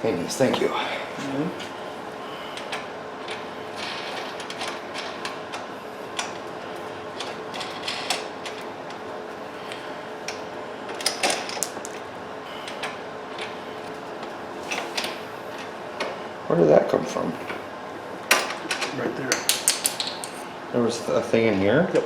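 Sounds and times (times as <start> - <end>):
faint steady hum: 0.0 - 22.0
parts clattering: 9.7 - 12.1, 18.3 - 20.5.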